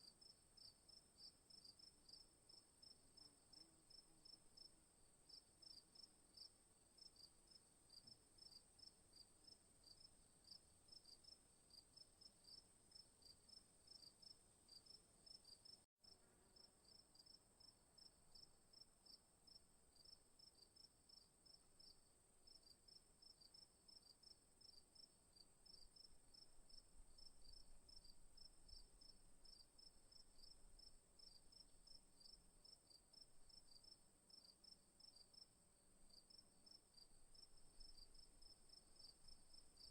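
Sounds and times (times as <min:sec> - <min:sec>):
crickets chirping in pulses: 0:22.5 - 0:35.5, 0:36.1 - 0:39.9.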